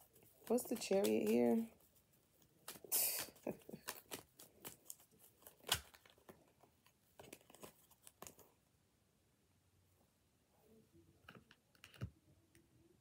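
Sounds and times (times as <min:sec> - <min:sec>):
cards shuffling: 0:00.0 - 0:08.5.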